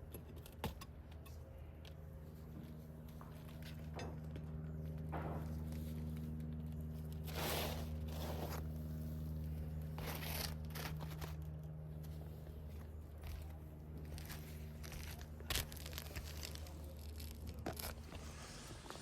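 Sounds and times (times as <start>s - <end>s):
steady low hum: 0.0s - 19.0s
roof shingles scraping and tearing: 7.2s - 9.2s, 10.0s - 11.4s, 14.1s - 19.0s.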